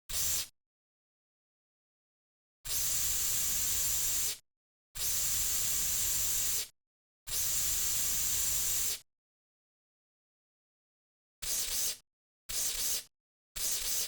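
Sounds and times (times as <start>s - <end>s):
aerosol can spraying: 11.4s - 14.0s.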